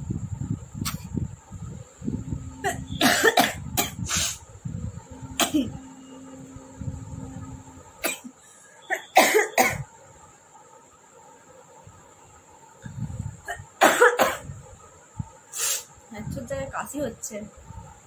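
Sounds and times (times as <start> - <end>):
person coughing: 2.6 - 3.9, 5.4 - 5.7, 8.9 - 9.8.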